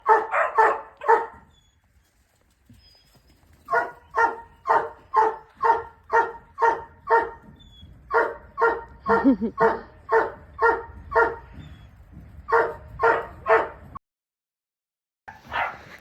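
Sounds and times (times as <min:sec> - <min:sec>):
dog barking: 0:00.0 - 0:01.4, 0:03.7 - 0:07.4, 0:08.1 - 0:11.5, 0:12.5 - 0:13.8, 0:15.3 - 0:15.9.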